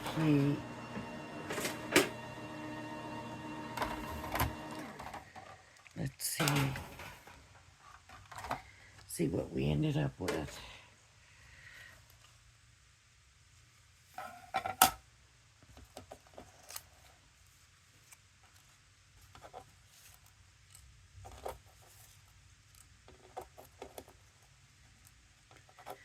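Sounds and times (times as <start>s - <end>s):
paper rustling: 15.8s - 24.4s.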